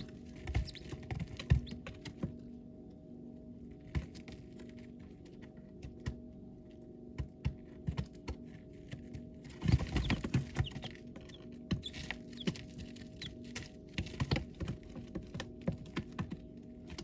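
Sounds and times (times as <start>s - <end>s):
faint chick peeps: 0.0s - 1.9s, 9.8s - 13.5s
chicks scratching in bedding: 0.0s - 2.2s, 8.4s - 17.0s
steady low hum: 0.0s - 17.0s.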